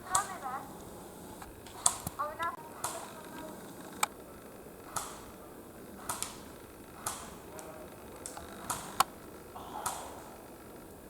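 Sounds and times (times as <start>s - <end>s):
airsoft gun pops: 4.9s - 5.4s, 6.0s - 9.2s, 9.8s - 10.2s.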